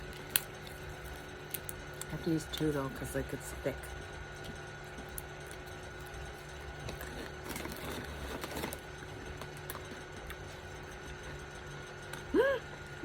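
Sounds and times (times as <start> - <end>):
crunchy chips being chewed: 0.0 - 2.9, 4.4 - 10.9
low room hum: 0.0 - 13.0.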